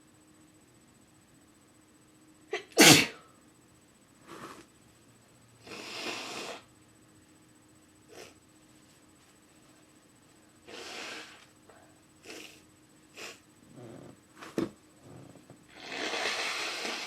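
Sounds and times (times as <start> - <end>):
woman sneezing: 2.5 - 3.2.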